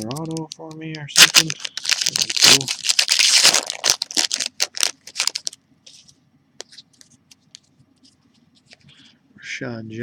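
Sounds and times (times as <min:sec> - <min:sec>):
wrapper tearing and crinkling: 0:00.0 - 0:05.6.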